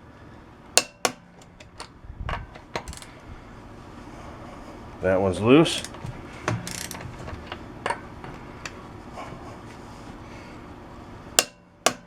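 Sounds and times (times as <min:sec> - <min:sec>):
torque wrench ticking: 0:06.6 - 0:07.0.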